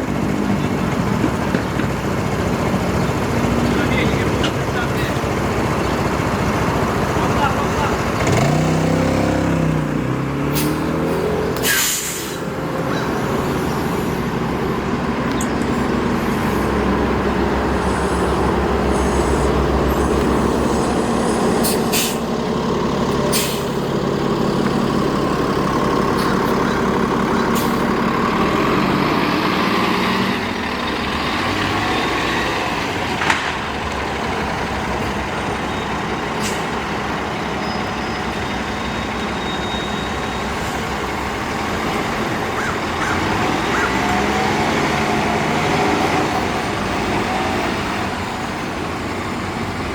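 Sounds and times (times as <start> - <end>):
bus diesel engine running: 0.0 - 49.9
air brake hiss: 10.6 - 10.8, 11.6 - 12.5, 20.5 - 22.3, 23.3 - 23.8.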